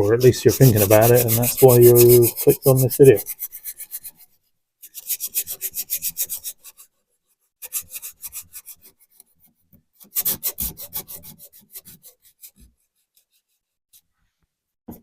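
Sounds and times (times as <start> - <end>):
sandpaper rubbing on metal: 0.0 - 6.9.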